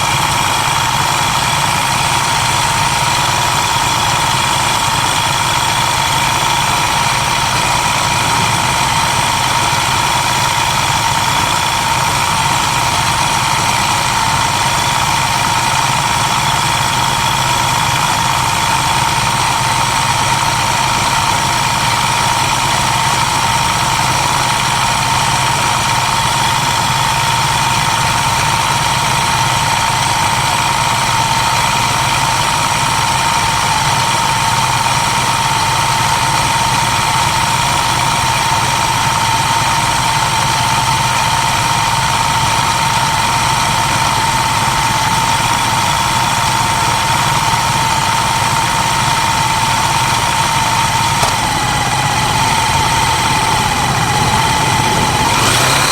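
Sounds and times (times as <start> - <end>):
motorcycle engine running steadily: 0.0 - 55.9.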